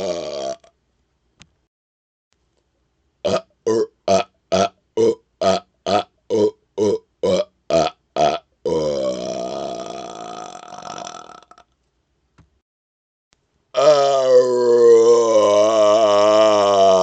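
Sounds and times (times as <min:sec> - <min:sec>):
man burping: 0:00.0 - 0:00.7, 0:03.3 - 0:11.7, 0:13.8 - 0:17.0.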